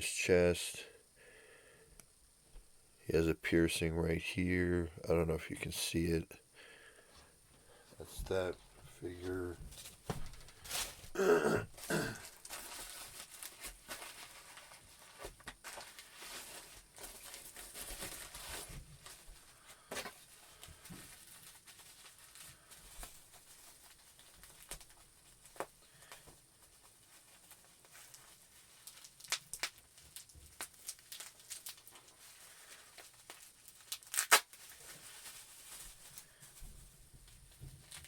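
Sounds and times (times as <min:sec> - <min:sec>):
plastic and cardboard crinkling: 0:07.8 - 0:38.0.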